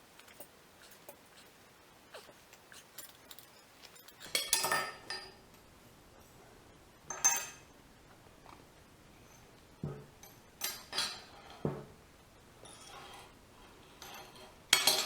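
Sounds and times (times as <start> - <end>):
metal objects clattering: 3.0 - 5.4.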